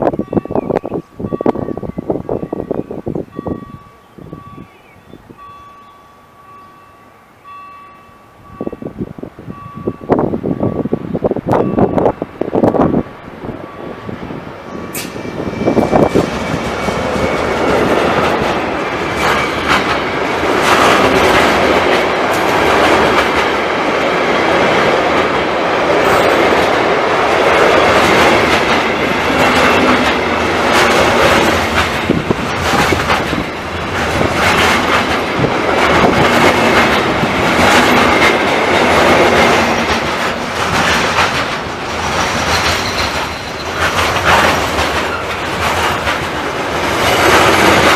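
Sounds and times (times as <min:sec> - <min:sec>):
train wheels clacking over rails: 0:14.8 - 0:47.9.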